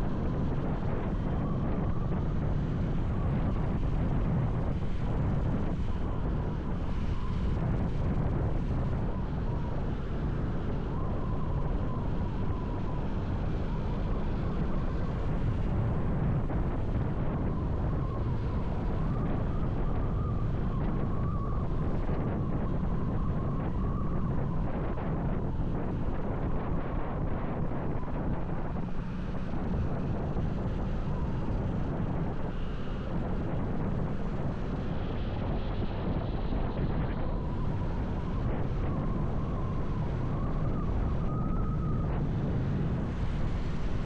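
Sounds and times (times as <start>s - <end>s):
faint wavering whine: 0.0s - 44.0s
wind rush on microphone: 0.0s - 44.0s.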